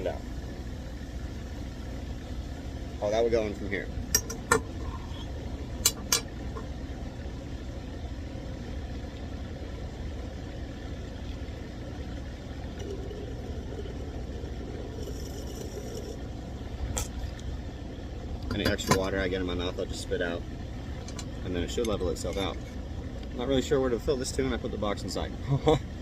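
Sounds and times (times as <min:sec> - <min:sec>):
steady low hum: 0:00.0 - 0:26.0
water filling: 0:11.1 - 0:17.5.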